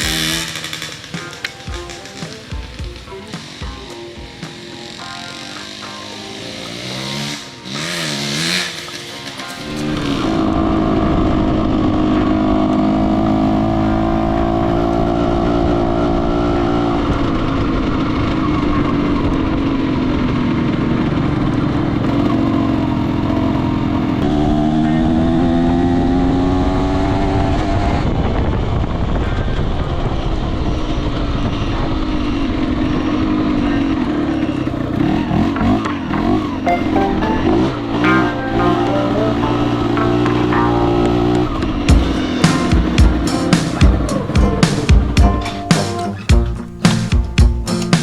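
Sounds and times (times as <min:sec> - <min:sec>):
motorcycle engine revving: 0:00.0 - 0:28.2.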